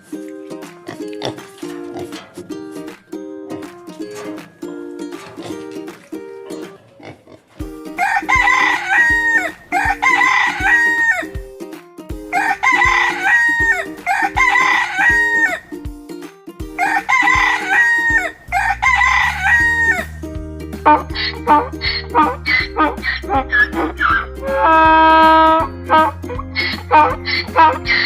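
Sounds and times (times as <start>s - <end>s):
background music with steady beat: 0.0s - 6.9s, 7.5s - 28.0s
rooster crowing: 8.0s - 11.3s, 12.3s - 15.8s, 16.8s - 20.2s.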